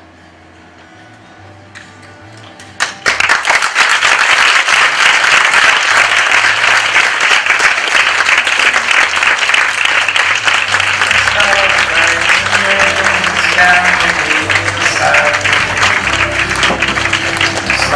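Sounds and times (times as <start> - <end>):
quiet music: 0.0 - 3.4, 10.2 - 17.9
audience applause: 2.8 - 17.9.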